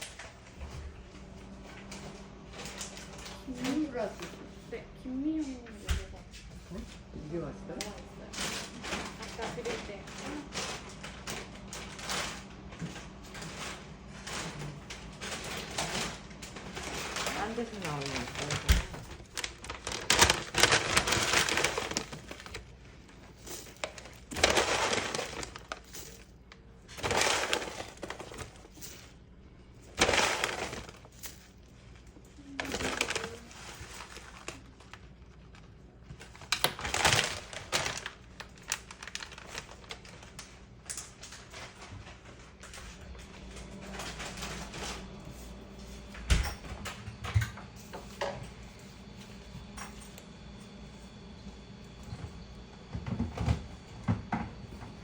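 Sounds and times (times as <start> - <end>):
dry crackling and rustling: 7.8 - 45.6.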